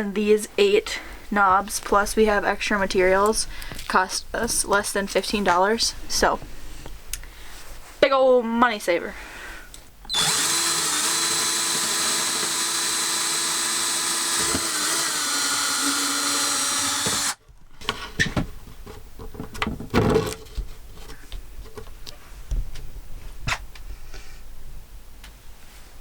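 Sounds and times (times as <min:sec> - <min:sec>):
power drill running: 0:10.1 - 0:17.4
handling clicks and knocks: 0:17.1 - 0:22.1.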